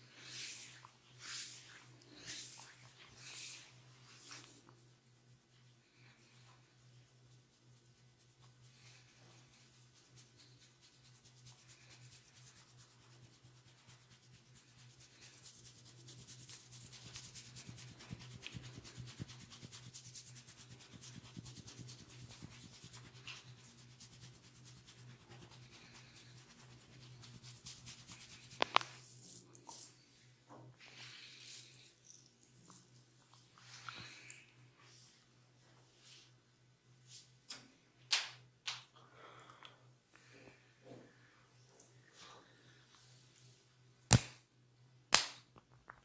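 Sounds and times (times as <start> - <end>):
hands rubbing skin and hair: 0.1 - 30.1.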